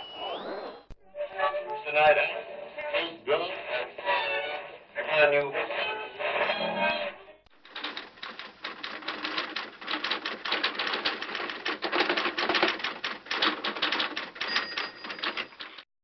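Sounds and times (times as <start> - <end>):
typewriter keys clacking: 7.6 - 15.9.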